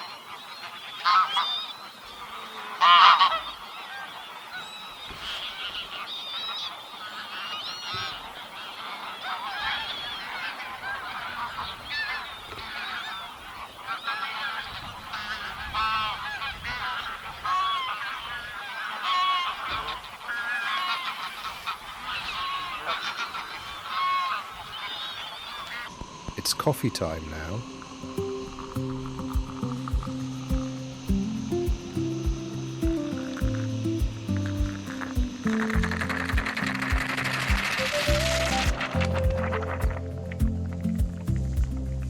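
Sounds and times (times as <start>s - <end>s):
geese honking: 1.0s - 1.7s, 2.5s - 4.1s, 13.9s - 25.9s, 27.0s - 40.6s.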